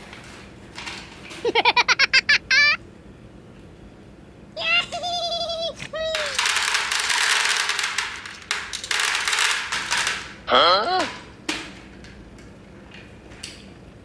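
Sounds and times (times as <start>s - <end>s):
plastic beads clattering: 6.1s - 10.4s
voice-like cry: 10.5s - 11.2s.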